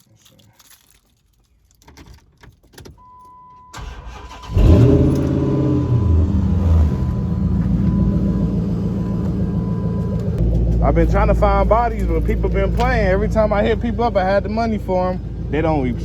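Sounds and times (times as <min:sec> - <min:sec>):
starter motor cranking: 0:03.8 - 0:06.1
car engine revving and idling: 0:03.8 - 0:16.0.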